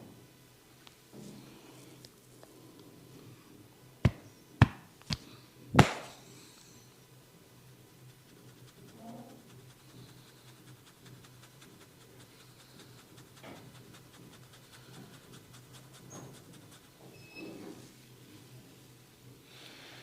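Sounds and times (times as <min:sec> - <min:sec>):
steady low hum: 0:02.1 - 0:17.1
hands rubbing through hair: 0:08.0 - 0:17.1.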